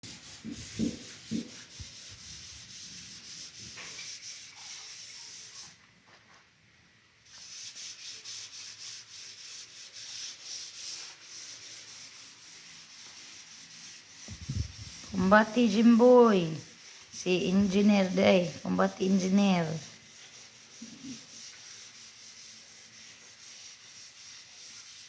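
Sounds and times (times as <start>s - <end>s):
rhythmic scraping strokes: 13.7s - 22.5s.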